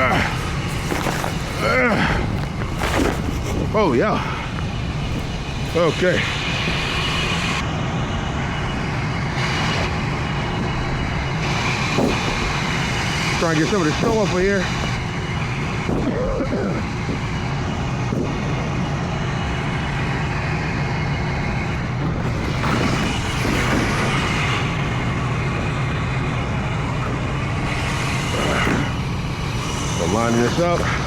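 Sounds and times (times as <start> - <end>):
hissing scraping noise: 0.0 - 7.6
hvac unit humming: 0.0 - 31.0.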